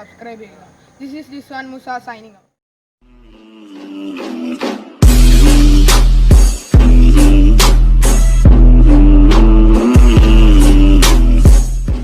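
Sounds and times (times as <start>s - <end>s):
loud music with deep bass: 3.2s - 12.0s.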